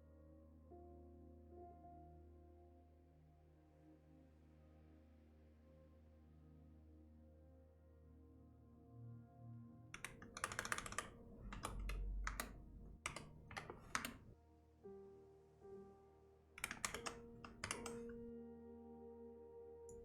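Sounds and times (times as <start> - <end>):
soft background music: 0.0 - 20.0
typing on computer keyboard: 10.0 - 14.3, 16.6 - 18.3.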